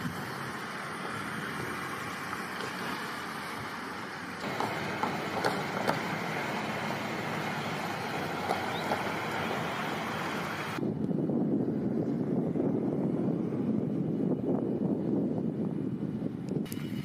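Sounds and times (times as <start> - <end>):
knocks and rattles: 4.4 - 6.8
strong storm wind rushing: 4.4 - 17.0.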